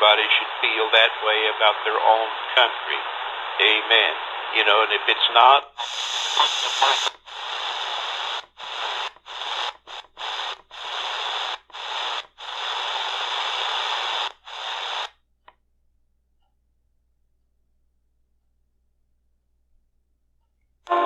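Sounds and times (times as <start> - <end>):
radio static hissing: 0.0 - 15.1.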